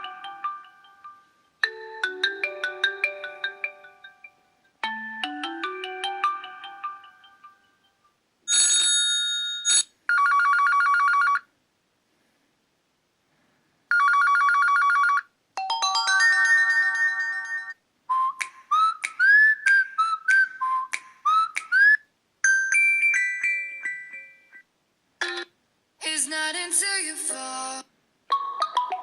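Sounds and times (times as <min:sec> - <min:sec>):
mallet-like ringtone melody: 0:00.0 - 0:10.4, 0:15.6 - 0:17.8, 0:22.4 - 0:24.7
bright chime: 0:15.6 - 0:17.8.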